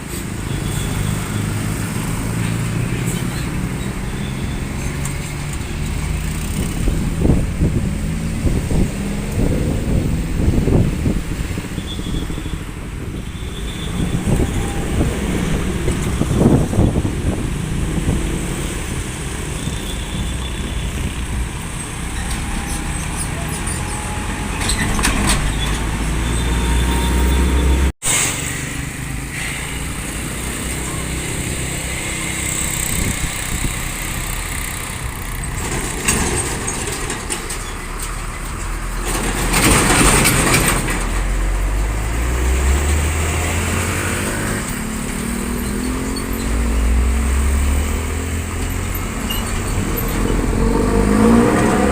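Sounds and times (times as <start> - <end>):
trucks and buses passing: 0.0 - 51.9
engine accelerating: 41.8 - 51.9.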